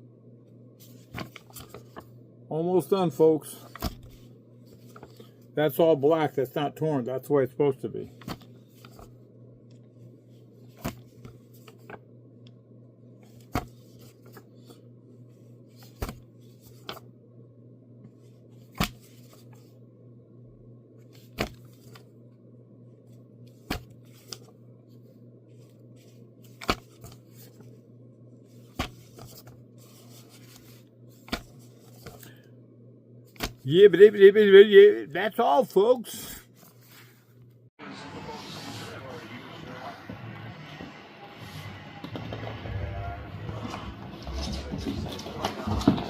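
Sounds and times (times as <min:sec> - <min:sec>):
steady low hum: 0:00.0 - 0:35.2
paper pages turning: 0:00.8 - 0:02.1, 0:03.6 - 0:05.4, 0:08.1 - 0:09.2, 0:10.6 - 0:12.0, 0:13.2 - 0:14.8, 0:15.7 - 0:17.0, 0:18.6 - 0:19.7, 0:21.1 - 0:22.1, 0:23.5 - 0:24.6, 0:25.5 - 0:27.7, 0:28.6 - 0:32.4, 0:33.3 - 0:33.7.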